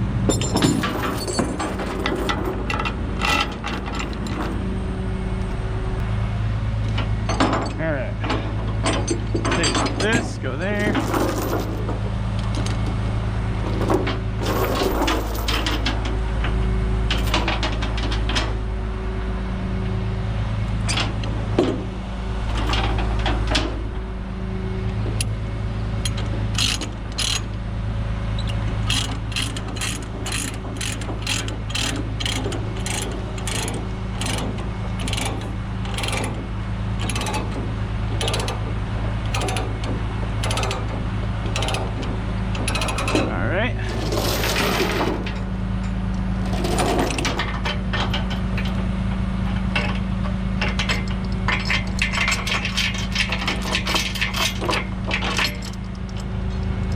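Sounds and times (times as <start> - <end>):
diesel truck engine idling: 15.9 - 46.6
ratchet pawl clicking: 28.4 - 36.3, 40.4 - 40.9, 41.5 - 42.0.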